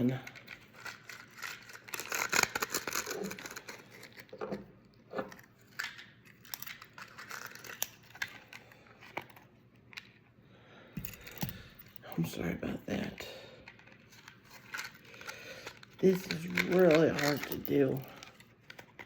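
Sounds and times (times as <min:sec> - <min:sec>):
cardboard crinkling and rustling: 0:13.9 - 0:19.0.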